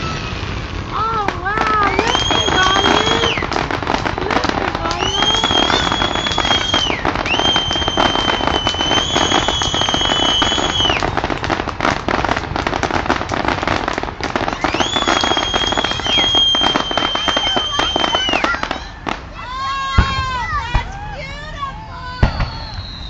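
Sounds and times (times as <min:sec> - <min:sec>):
high-pitched firework whistles: 0:00.0 - 0:01.0, 0:01.6 - 0:11.9, 0:14.3 - 0:19.1, 0:22.2 - 0:23.0
fireworks crackling and popping: 0:00.0 - 0:23.0.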